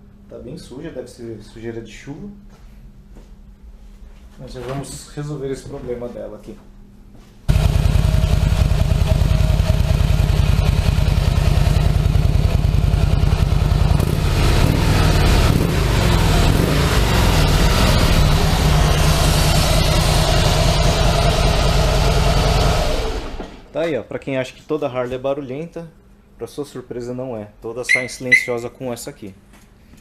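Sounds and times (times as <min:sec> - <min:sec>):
motorcycle engine running: 0:07.5 - 0:23.3.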